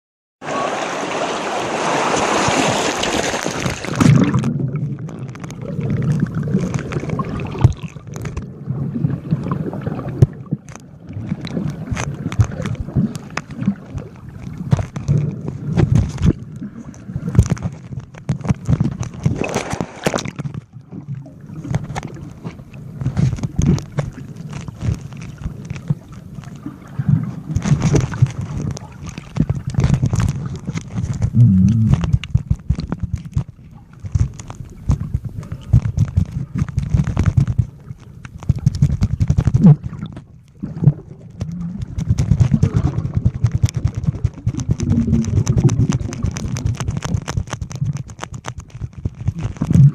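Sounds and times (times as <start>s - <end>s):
underwater sloshing and gurgling: 0.4s - 49.9s.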